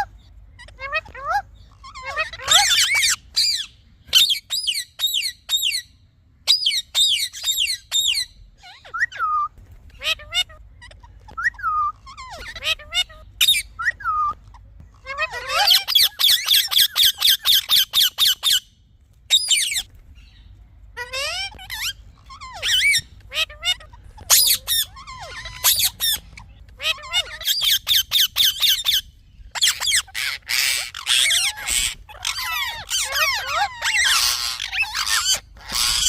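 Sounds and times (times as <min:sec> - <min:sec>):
parakeet chirping and squawking: 0:00.0 - 0:18.7, 0:19.3 - 0:36.0.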